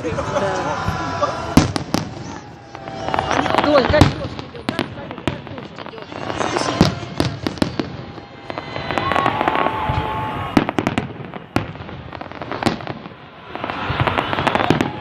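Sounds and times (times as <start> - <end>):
fireworks crackling: 1.1 - 15.0
falling firework whistle: 1.5 - 4.0, 6.3 - 15.0.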